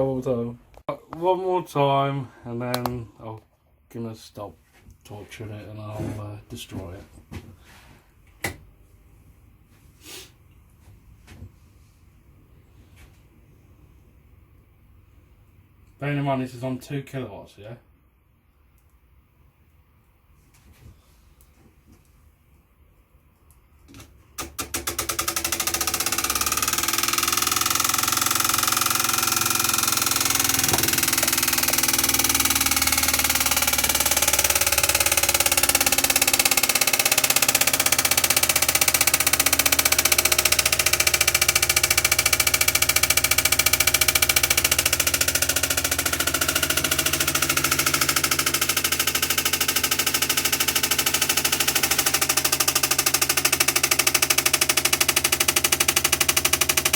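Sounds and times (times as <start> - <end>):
fan heater pulsing drone: 24.4 - 56.9.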